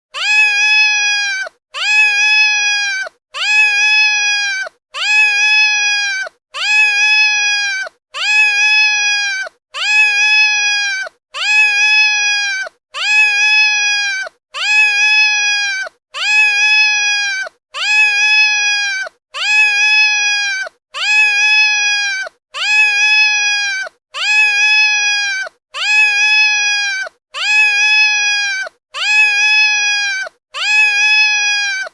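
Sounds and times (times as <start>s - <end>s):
cat meowing: 0.2s - 31.9s.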